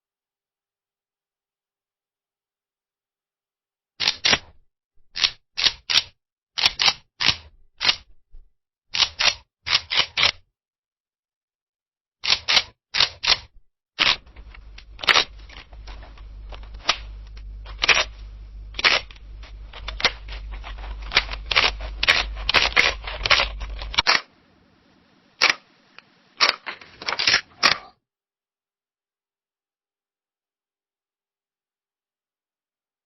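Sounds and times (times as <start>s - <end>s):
low hum: 13.5s - 26.0s.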